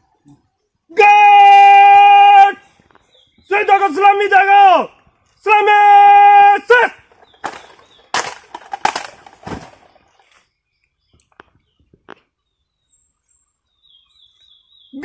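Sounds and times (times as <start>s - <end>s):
rifles slapped in salute: 7.4s - 9.8s.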